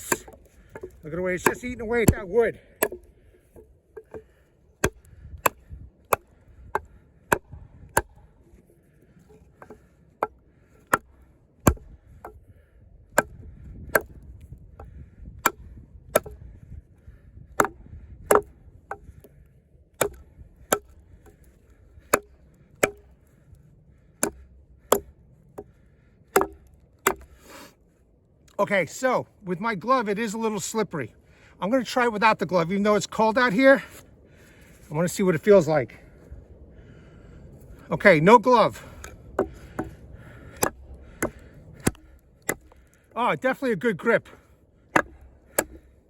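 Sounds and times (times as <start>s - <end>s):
knife chopping into log: 0.0s - 4.2s, 4.8s - 8.1s, 10.9s - 12.4s, 13.2s - 14.2s, 16.2s - 16.4s, 17.6s - 19.0s, 20.0s - 21.4s, 22.0s - 23.1s, 24.2s - 25.1s, 26.4s - 27.4s, 40.6s - 42.8s, 45.0s - 45.9s.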